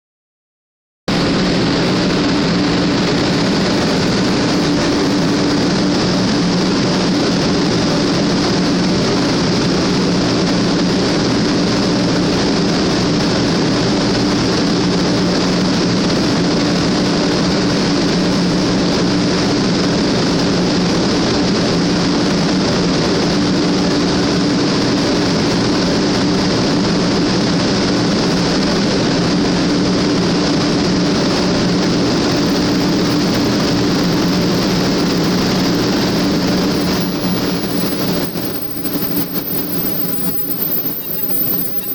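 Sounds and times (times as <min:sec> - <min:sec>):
train rushing at speed: 0:01.1 - 0:41.9
steady two-note hum: 0:30.2 - 0:41.9.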